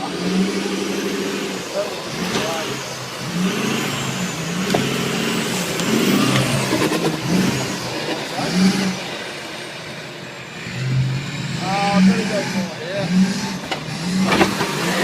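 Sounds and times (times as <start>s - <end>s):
engine revving: 0.0s - 15.0s
sharp knocks and clunks: 4.6s - 5.2s, 13.6s - 14.7s.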